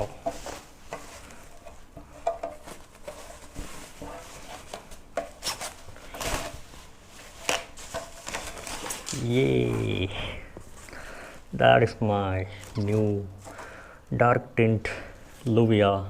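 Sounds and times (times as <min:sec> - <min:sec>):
knocks and scrapes on foam packing: 0:02.4 - 0:09.1.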